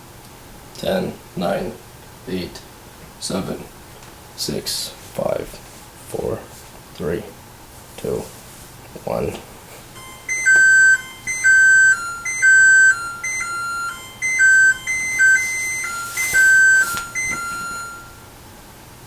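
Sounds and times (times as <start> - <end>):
electronic chime tune: 10.0 - 18.2.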